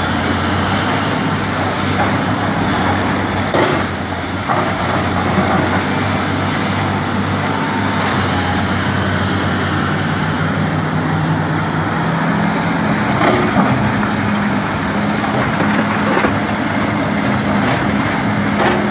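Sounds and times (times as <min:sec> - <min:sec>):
excavator diesel engine running: 0:00.0 - 0:18.9.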